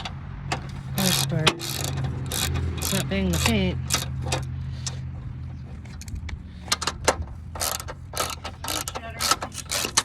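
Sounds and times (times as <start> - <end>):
ratchet wrench clicking: 0.6 - 5.0, 6.7 - 10.0.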